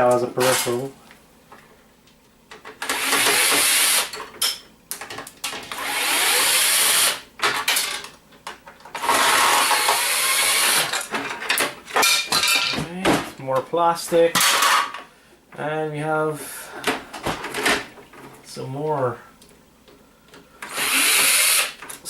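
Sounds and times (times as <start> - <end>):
clicks and knocks of parts: 1.5 - 5.8, 7.4 - 10.0, 10.8 - 13.4
handheld power tool running: 2.8 - 4.2, 5.6 - 7.2, 9.0 - 11.0, 20.6 - 21.8.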